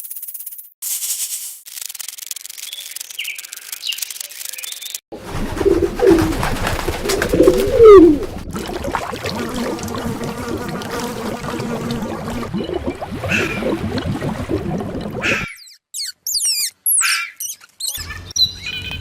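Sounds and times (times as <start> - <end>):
pigeon cooing: 5.4 - 8.3.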